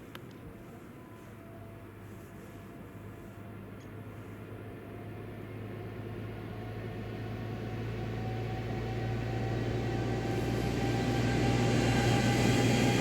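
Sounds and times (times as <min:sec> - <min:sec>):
vehicle engine hum: 0:00.0 - 0:13.0.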